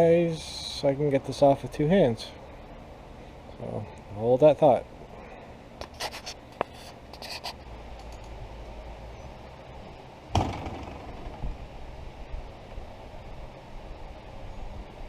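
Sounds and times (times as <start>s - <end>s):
camera scraping and clicking: 5.8s - 7.6s
camera knocking down: 10.4s - 11.4s.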